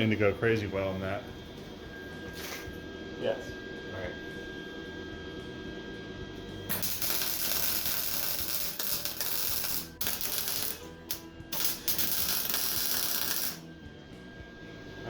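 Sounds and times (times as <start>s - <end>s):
arc welder crackling sizzle: 6.6s - 13.7s.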